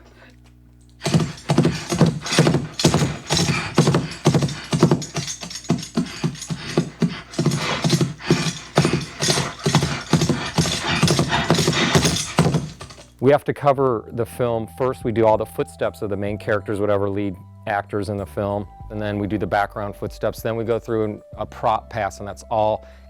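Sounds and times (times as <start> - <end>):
horse snorts: 1.0 - 13.0
hooves clip-clopping: 1.0 - 13.1
bridle jingling: 1.0 - 13.2.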